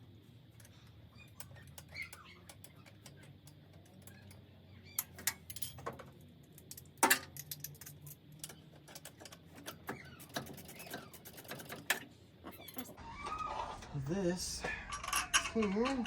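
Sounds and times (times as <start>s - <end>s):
metal tools clinking: 14.5s - 16.0s.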